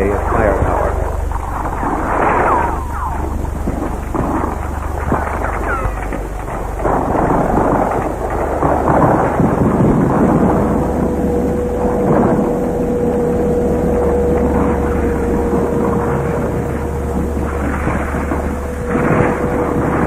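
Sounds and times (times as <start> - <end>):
gunfire and explosions: 0.0 - 10.3
steady whine: 0.0 - 20.0.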